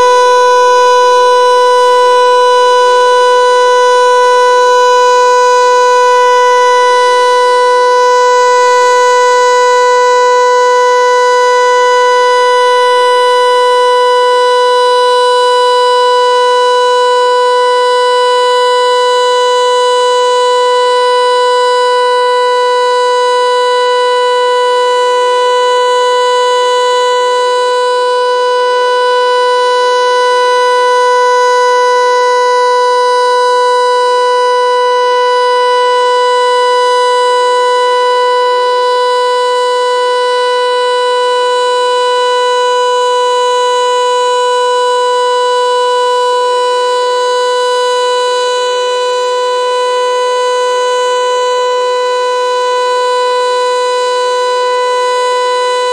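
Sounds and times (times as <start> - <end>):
electronic siren steady tone: 0.0 - 55.9.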